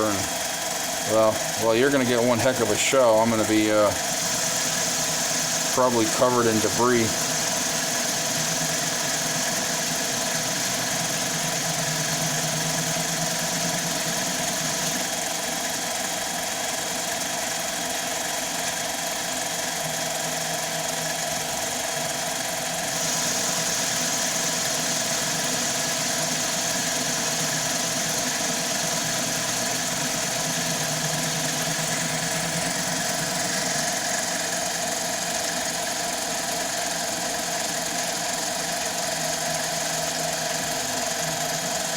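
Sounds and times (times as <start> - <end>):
tool cutting metal hiss: 0.0 - 0.4, 1.0 - 15.2, 22.9 - 35.5
lathe running: 0.0 - 41.9.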